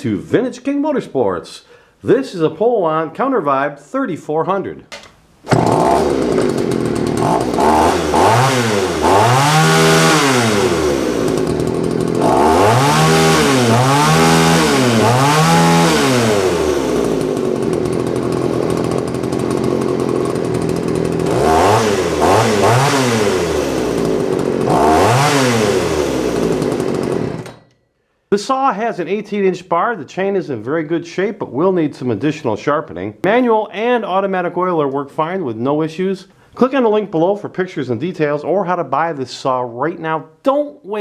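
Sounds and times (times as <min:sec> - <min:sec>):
chainsaw revving and idling: 0:05.5 - 0:27.6.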